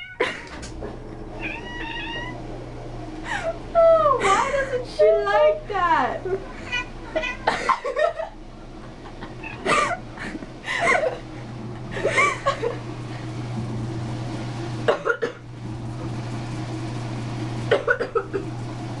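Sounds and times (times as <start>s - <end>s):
cat meowing loudly: 1.4s - 2.4s
person coughing: 9.7s - 10.0s, 14.9s - 15.4s, 17.7s - 18.4s.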